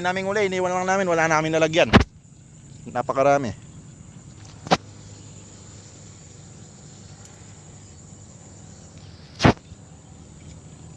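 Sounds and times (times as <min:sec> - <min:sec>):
high insect-like drone: 0:00.0 - 0:10.9.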